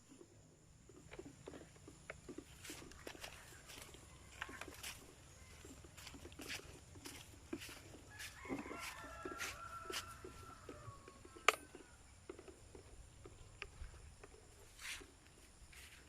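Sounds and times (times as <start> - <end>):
rooster crowing: 7.0 - 12.1.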